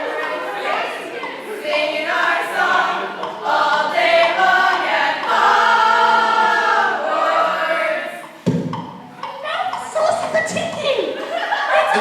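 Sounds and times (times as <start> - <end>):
voices singing in harmony: 0.0 - 8.4.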